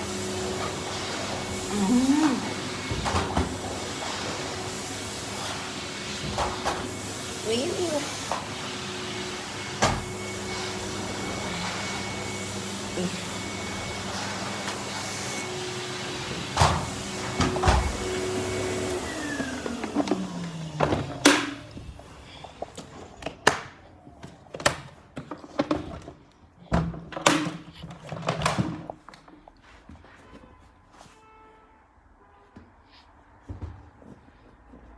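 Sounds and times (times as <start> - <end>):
vacuum cleaner whining: 0.0 - 23.4.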